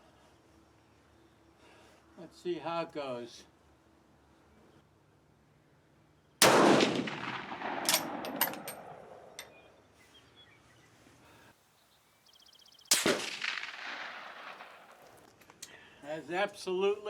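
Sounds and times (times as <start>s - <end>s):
rifle shots with echo: 6.4s - 9.5s, 12.9s - 15.2s
rifle bolt metallic clicks: 7.1s - 9.5s.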